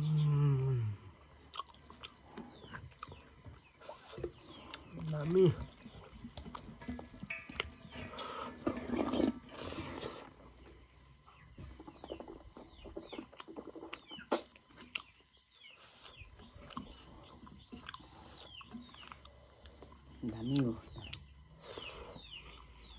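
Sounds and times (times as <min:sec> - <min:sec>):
person chewing with lip smacks: 0:01.5 - 0:03.2, 0:16.0 - 0:20.0.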